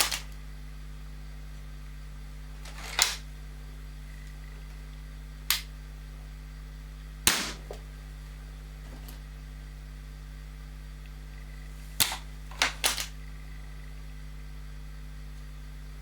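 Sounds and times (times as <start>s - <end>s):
air rifle shots: 0.0s - 0.3s, 7.3s - 7.9s
low electrical hum: 0.0s - 16.0s.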